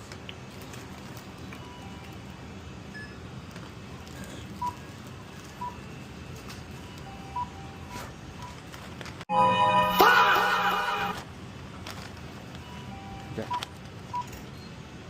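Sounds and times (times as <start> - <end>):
store hum: 0.0 - 15.0
loud music: 9.3 - 11.2.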